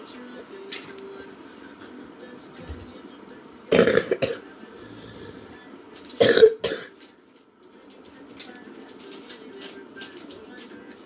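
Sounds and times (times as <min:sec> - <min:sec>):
person coughing: 0:03.7 - 0:04.4, 0:06.2 - 0:06.9.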